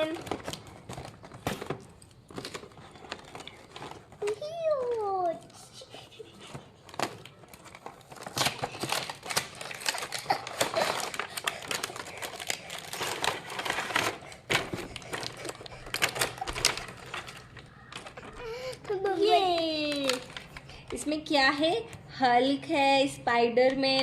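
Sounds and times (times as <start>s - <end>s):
packaging tearing and crinkling: 6.8s - 20.9s.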